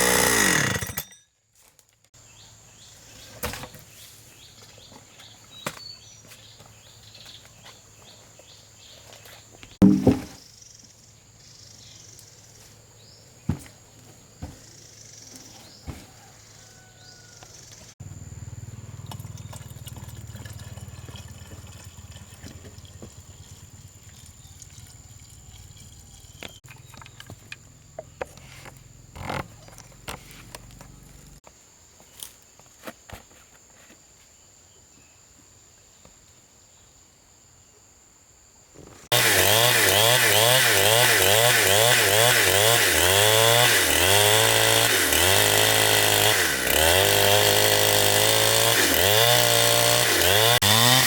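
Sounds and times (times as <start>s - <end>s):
loud thump: 9.8s - 10.4s.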